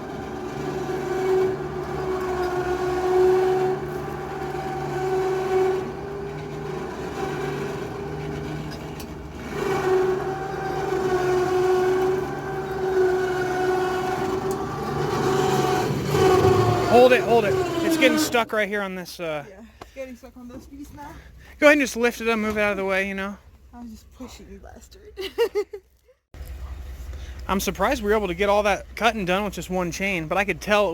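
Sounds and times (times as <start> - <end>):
chainsaw cutting log: 0.0 - 18.4.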